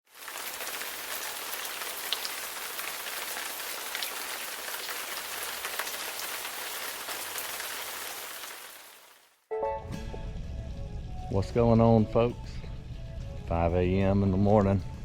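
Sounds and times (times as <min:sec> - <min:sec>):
rain falling: 0:00.1 - 0:09.4
raindrops ticking on a surface: 0:00.1 - 0:09.4.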